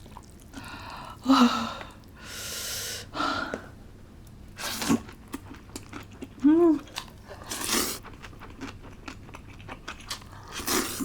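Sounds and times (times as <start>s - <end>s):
person gasping: 0.6s - 3.7s.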